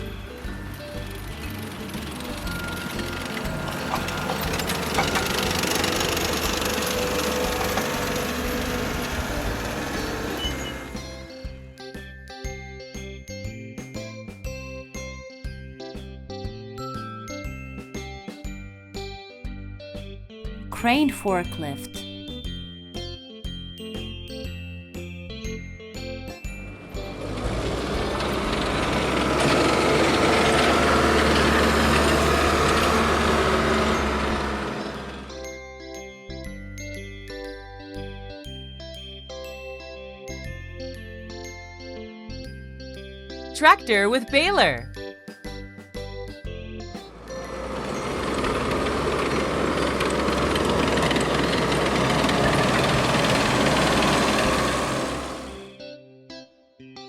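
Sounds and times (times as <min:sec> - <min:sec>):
forklift engine running: 0:00.0 - 0:11.4, 0:26.7 - 0:35.4, 0:47.1 - 0:55.8.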